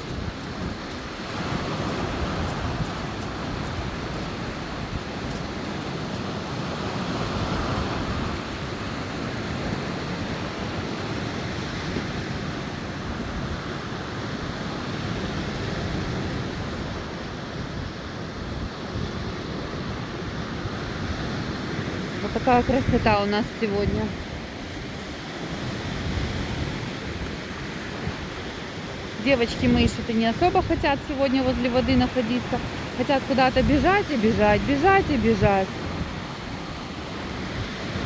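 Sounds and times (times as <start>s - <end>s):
stormy sea surf on shore: 0.0s - 38.0s
wind rumbling on microphone: 0.0s - 38.0s.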